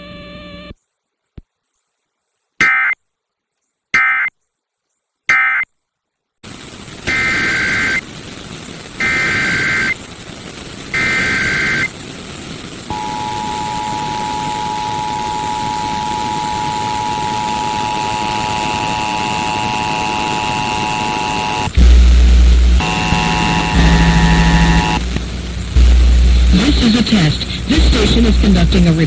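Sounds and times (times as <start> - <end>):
buzzing two-tone data bursts: 2.6 - 3.0, 4.0 - 4.3, 5.3 - 5.7, 7.1 - 8.1, 9.0 - 10.1, 10.9 - 12.0, 12.9 - 29.0
harsh two-tone attention signal: 5.3 - 5.6, 9.0 - 10.0, 11.0 - 11.9, 12.9 - 22.0, 22.8 - 25.0
steady hiss: 6.4 - 29.0.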